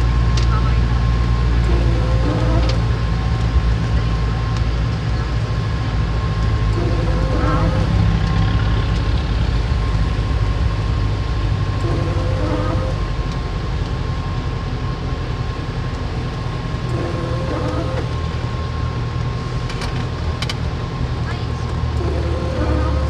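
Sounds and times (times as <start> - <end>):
faint voices: 0.0 - 8.9
vehicle engine rumbling at low revs: 0.0 - 23.0.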